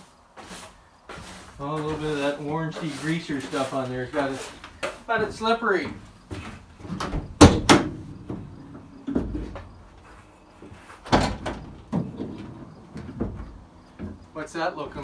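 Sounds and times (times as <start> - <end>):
van door clicks: 7.0 - 9.4, 11.1 - 12.3
van door thump: 7.0 - 9.5, 11.1 - 12.4.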